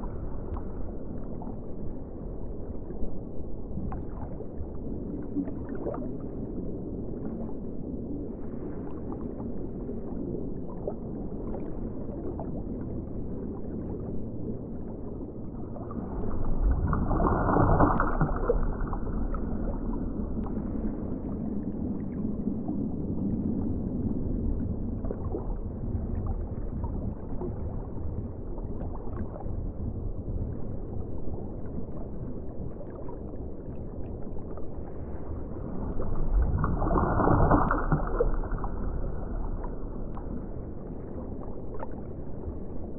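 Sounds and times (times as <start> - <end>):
underwater rush of seawater: 15.7 - 22.4, 35.0 - 40.0
bubbles crackling: 15.8 - 20.5, 36.2 - 40.3.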